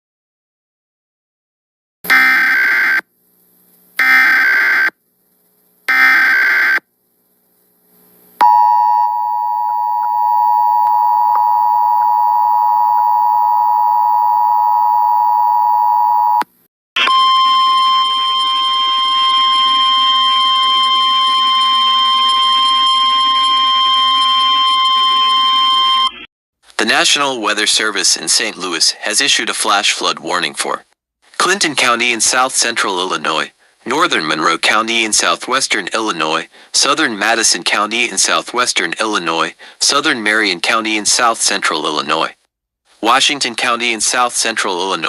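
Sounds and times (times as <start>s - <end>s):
two-tone attention signal: 17.0s - 26.2s
warbling data bursts: 18.2s - 25.8s
static: 19.3s - 25.7s.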